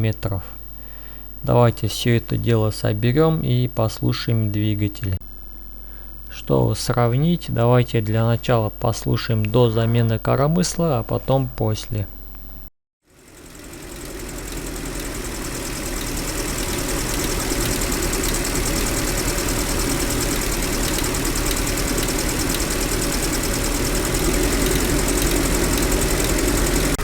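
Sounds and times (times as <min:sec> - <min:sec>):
car engine idling: 0:13.1 - 0:27.0
valve train ticking knock: 0:13.2 - 0:27.0.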